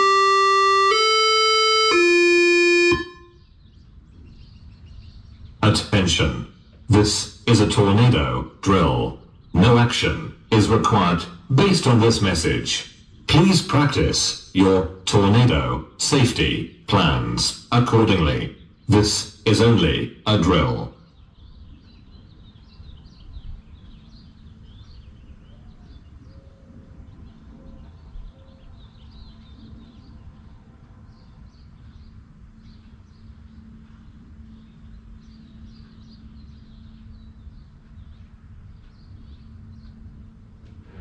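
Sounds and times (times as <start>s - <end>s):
small birds chirping: 0.0s - 41.0s
low outdoor rumble: 3.1s - 41.0s
faint steady hum: 29.3s - 41.0s.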